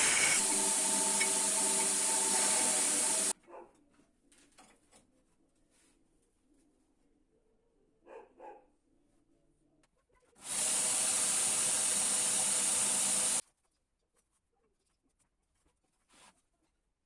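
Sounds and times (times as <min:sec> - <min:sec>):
loud hissing rush: 0:00.0 - 0:03.3.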